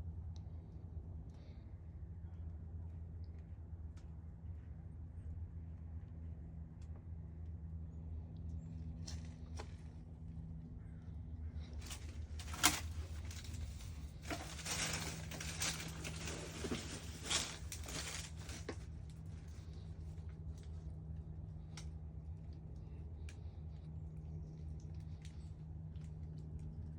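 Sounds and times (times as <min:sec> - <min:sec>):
steady low hum: 0:00.0 - 0:26.9
raccoon rummaging through garbage: 0:11.6 - 0:20.7.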